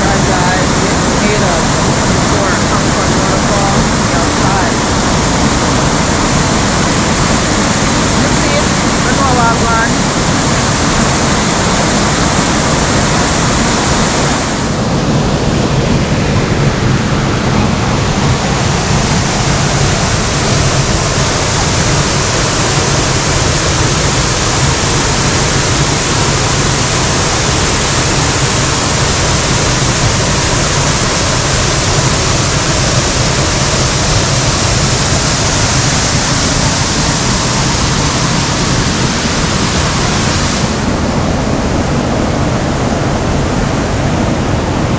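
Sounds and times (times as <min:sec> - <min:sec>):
waterfall rushing: 0:00.0 - 0:44.9.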